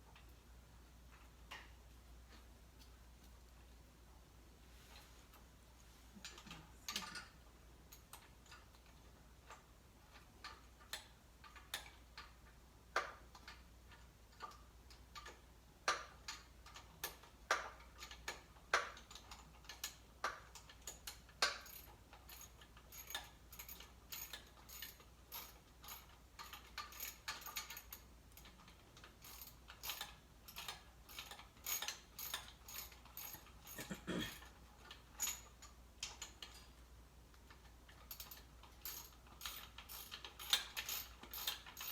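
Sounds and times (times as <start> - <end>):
hand tools clicking on metal: 13.0 - 36.7, 37.4 - 41.9.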